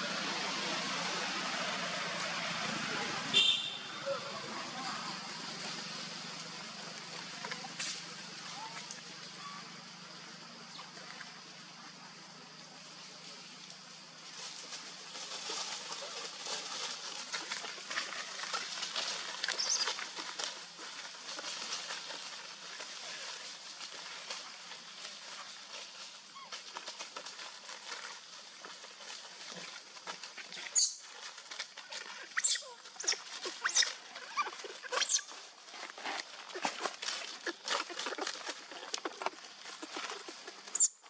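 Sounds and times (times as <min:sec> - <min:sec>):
rustling and shuffling: 0:13.7 - 0:40.8
baby monkey squeaking: 0:32.4 - 0:35.3.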